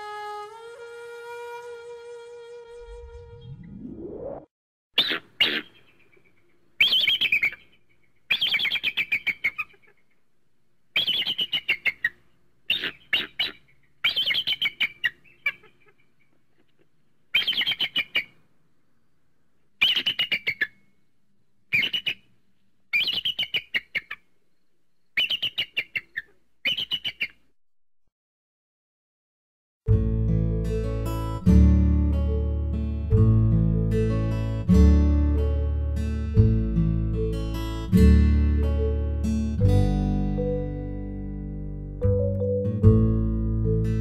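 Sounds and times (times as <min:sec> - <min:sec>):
eagle chattering calls: 0:05.0 - 0:10.0, 0:11.0 - 0:16.3, 0:17.3 - 0:18.4, 0:19.8 - 0:20.8, 0:21.7 - 0:22.2, 0:22.9 - 0:24.2, 0:25.2 - 0:27.4.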